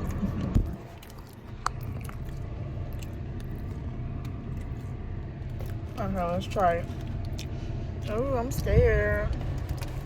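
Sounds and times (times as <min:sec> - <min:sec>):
small crunches and clicks: 0:00.0 - 0:04.8, 0:09.3 - 0:10.0
person chewing food: 0:00.0 - 0:05.9, 0:06.8 - 0:08.1
steady low hum: 0:00.0 - 0:10.0.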